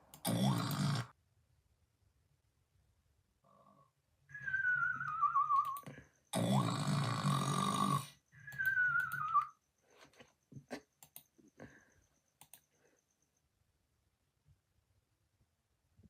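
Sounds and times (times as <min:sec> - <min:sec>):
snoring with whistle: 0:00.3 - 0:01.1, 0:04.3 - 0:09.5.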